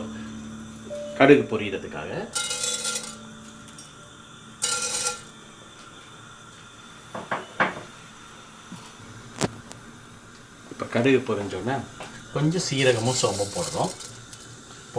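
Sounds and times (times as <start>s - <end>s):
metal utensils clattering on pan: 2.3s - 5.4s, 12.0s - 14.9s.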